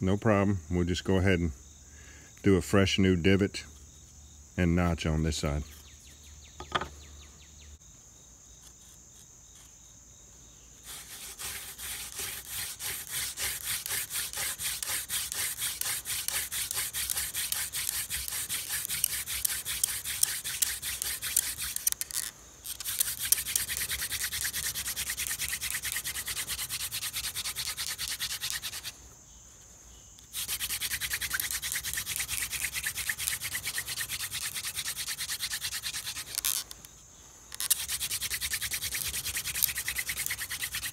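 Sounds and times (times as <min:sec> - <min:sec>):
spindle rubbing in fireboard: 0:10.8 - 0:28.9, 0:30.2 - 0:36.8, 0:37.5 - 0:40.9.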